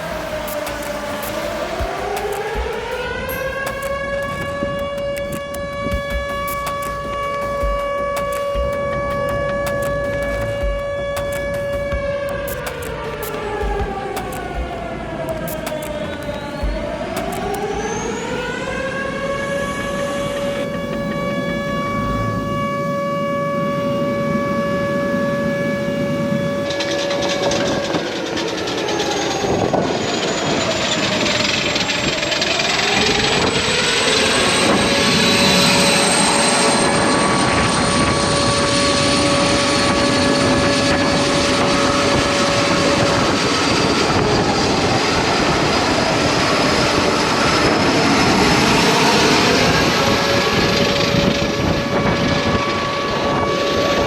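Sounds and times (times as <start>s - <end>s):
jet engines spooling up: 0.0s - 24.7s, 25.3s - 54.0s
high whine climbing in pitch: 0.0s - 54.0s.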